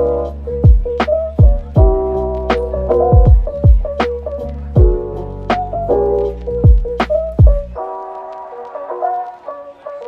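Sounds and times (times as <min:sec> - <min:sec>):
deep pitch-dropping bass kicks: 0:00.0 - 0:07.8
held keyboard notes: 0:00.0 - 0:10.0.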